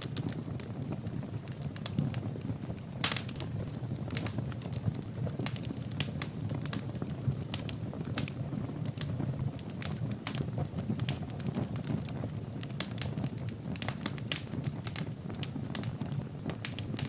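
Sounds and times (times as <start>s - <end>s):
fire crackling and popping: 0.0s - 17.0s
fire flames rumbling: 0.0s - 17.0s.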